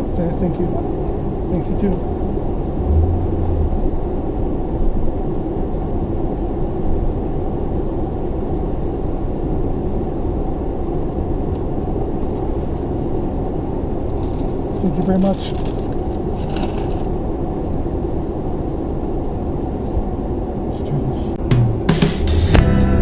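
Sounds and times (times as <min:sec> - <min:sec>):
car engine running inside cabin: 0:02.1 - 0:05.4.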